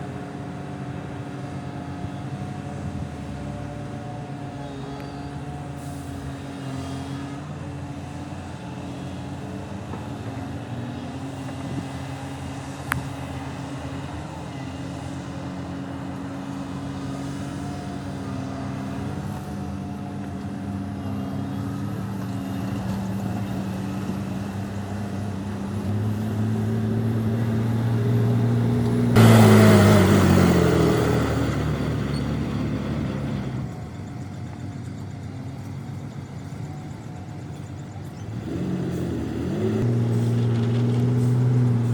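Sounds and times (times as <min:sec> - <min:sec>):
heavy diesel engines running: 0:00.0 - 0:41.9.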